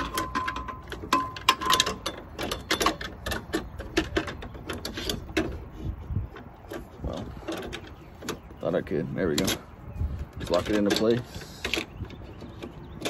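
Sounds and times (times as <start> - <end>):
saw accessory clicking and knocking: 0.0 - 5.6.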